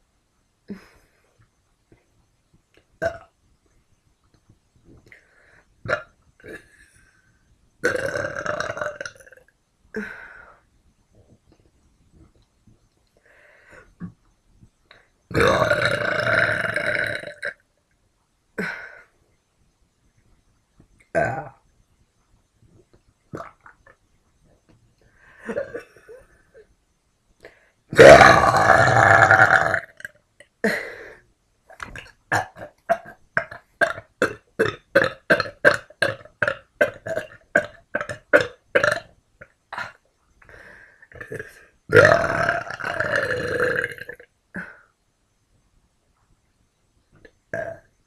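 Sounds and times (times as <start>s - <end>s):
person burping: 3.0s - 3.3s, 5.9s - 7.0s, 7.8s - 10.4s, 15.3s - 17.6s, 21.1s - 21.6s, 23.4s - 24.0s, 25.3s - 26.6s, 27.9s - 40.1s, 41.1s - 44.8s, 47.2s - 47.9s.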